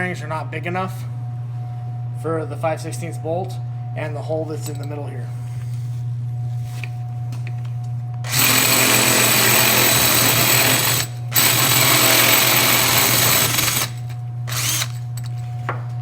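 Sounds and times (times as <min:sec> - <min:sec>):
power drill drilling: 0:08.2 - 0:15.0.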